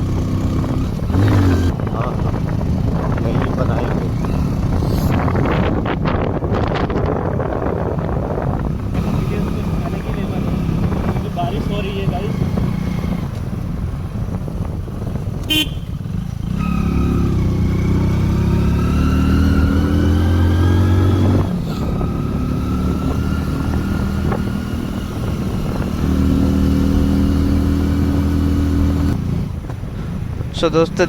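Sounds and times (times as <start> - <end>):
motorcycle engine accelerating: 0.0 - 31.0
short horn beep: 15.5 - 16.0.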